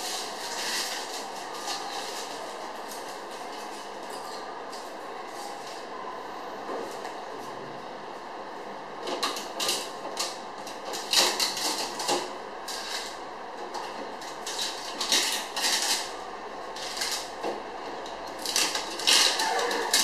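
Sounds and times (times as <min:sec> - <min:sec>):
packaging rustling and scraping: 0:00.0 - 0:05.8, 0:09.2 - 0:17.4, 0:18.2 - 0:20.0.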